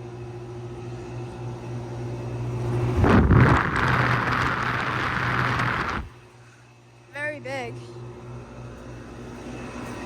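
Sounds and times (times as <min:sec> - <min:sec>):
condensing unit humming: 0:00.0 - 0:10.0
fans rushing air: 0:01.3 - 0:07.0.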